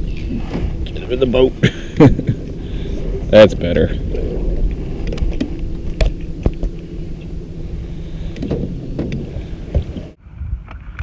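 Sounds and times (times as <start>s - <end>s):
low rumble: 0.0s - 11.0s
clicks and knocks in a boat: 8.3s - 11.0s.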